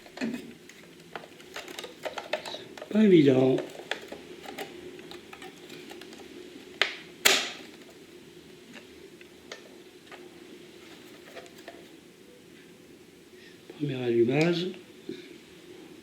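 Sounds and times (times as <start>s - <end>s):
plastic clicks and knocks: 0.0s - 3.0s, 3.6s - 8.0s
faint steady hum: 0.0s - 16.0s.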